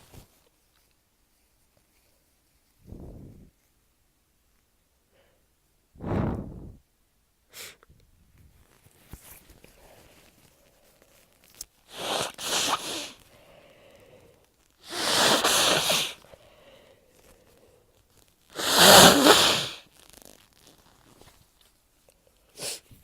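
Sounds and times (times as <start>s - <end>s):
person sneezing: 11.9s - 13.2s, 14.8s - 16.2s, 18.6s - 19.8s.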